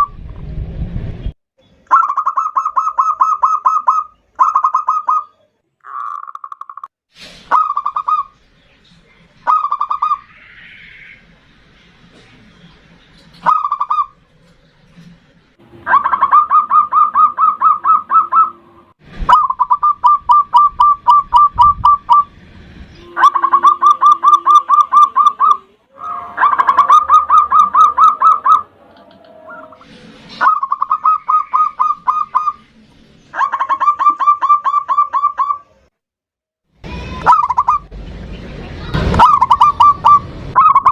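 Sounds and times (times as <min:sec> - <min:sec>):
dove cooing in staccato notes: 0:15.9 - 0:18.6, 0:26.4 - 0:29.7.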